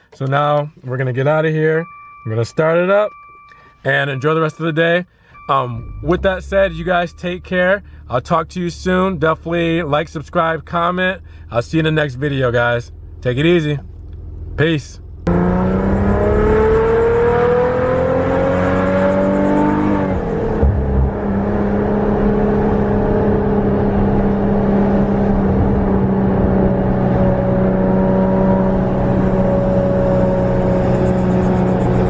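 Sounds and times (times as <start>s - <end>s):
car engine accelerating: 5.4s - 32.0s.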